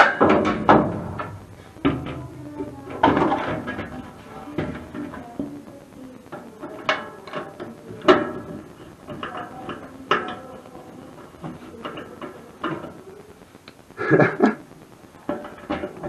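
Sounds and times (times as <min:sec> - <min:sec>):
knocks and clanks: 0:00.0 - 0:05.7, 0:15.2 - 0:16.0
handling noises: 0:00.0 - 0:13.5.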